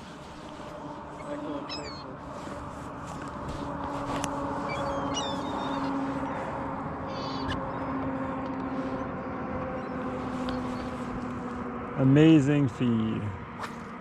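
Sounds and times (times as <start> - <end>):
boat motor humming: 0.0 - 12.2
seagulls calling: 1.0 - 2.3, 4.0 - 11.3.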